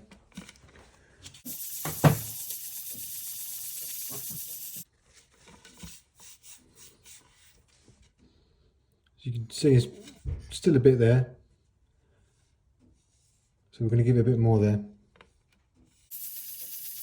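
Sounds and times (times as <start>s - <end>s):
faint handling sounds: 0.0s - 8.8s
sandpaper rubbing on lacquer: 1.5s - 4.8s, 16.1s - 17.0s.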